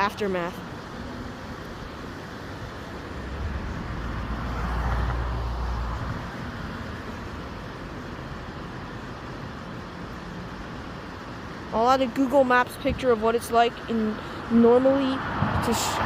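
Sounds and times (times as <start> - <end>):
road traffic noise: 0.0 - 16.0
vehicle passing with deep rumble: 3.1 - 8.9.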